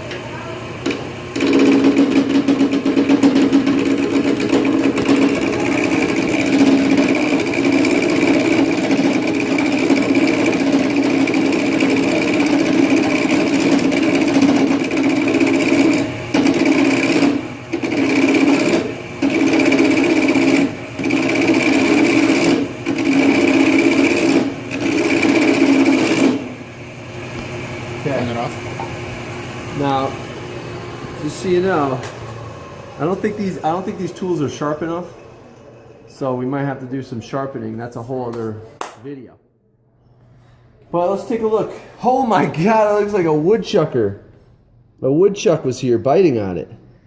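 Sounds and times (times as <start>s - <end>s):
lathe tool cutting wood chatter: 0.8s - 37.0s.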